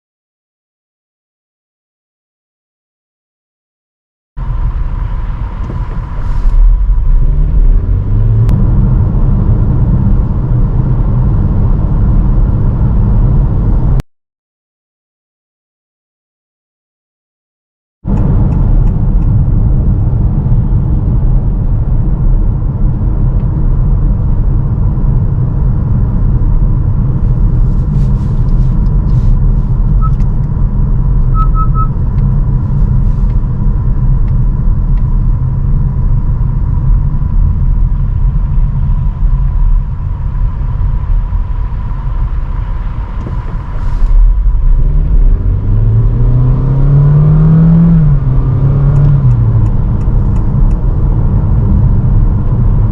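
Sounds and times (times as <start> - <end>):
road and wind noise: 4.4 - 14.0, 18.0 - 52.9
rising pitched drone: 4.5 - 12.7, 31.2 - 32.1.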